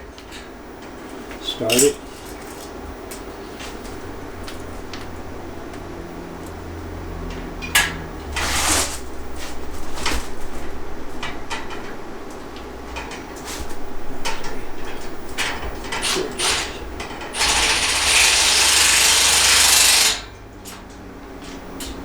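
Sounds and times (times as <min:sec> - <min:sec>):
power tool running: 0:08.2 - 0:10.3, 0:16.0 - 0:20.3
ratchet clicking: 0:16.4 - 0:20.2.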